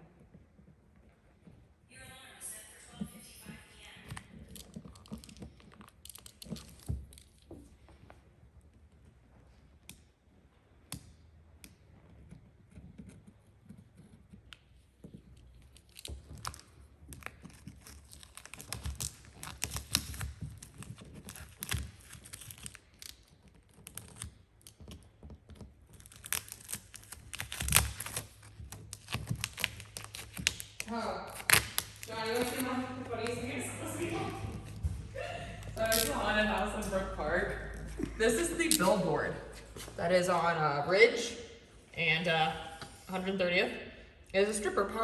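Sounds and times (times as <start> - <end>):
vinyl film crinkling: 15.7 - 40.2.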